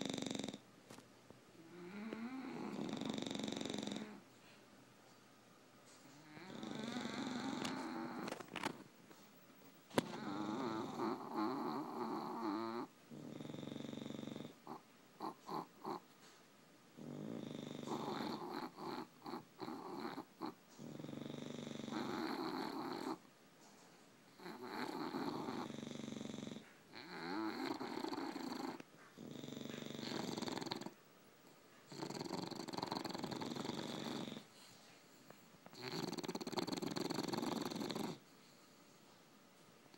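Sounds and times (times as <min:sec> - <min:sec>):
dogs snoring: 0:00.0 - 0:01.0, 0:01.6 - 0:04.4, 0:05.9 - 0:08.8, 0:09.9 - 0:23.3, 0:24.3 - 0:31.0, 0:31.8 - 0:38.8
dog snorting: 0:01.7 - 0:04.2, 0:06.0 - 0:08.8, 0:09.9 - 0:16.1, 0:17.0 - 0:23.2, 0:24.3 - 0:31.0, 0:31.8 - 0:34.8, 0:35.7 - 0:38.2.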